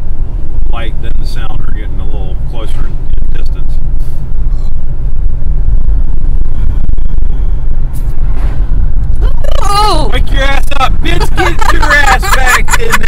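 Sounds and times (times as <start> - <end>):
car interior road rumble: 0.0 - 13.0
person speaking: 10.9 - 13.0.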